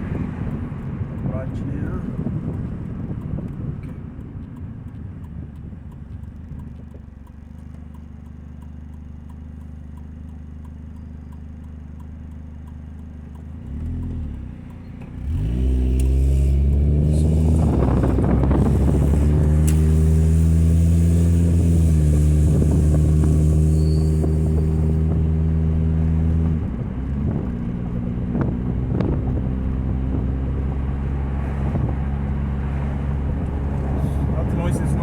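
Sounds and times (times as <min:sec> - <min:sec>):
car engine droning: 0:00.0 - 0:35.0
leaking exhaust drone: 0:07.4 - 0:26.8.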